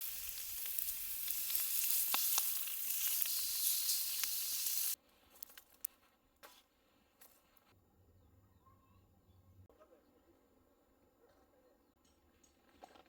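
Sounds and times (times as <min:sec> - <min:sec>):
meat sizzling on a grill plate: 0:00.0 - 0:05.0.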